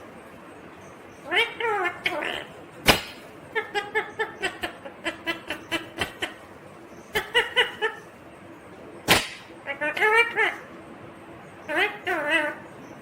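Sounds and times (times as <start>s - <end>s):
parakeet chattering: 1.1s - 8.2s, 9.1s - 10.7s, 11.6s - 13.0s.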